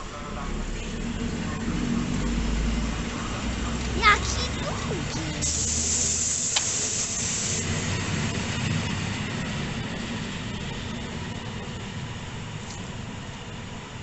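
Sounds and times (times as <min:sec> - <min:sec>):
train low rumble: 0:00.0 - 0:14.0
high hiss: 0:04.1 - 0:07.9.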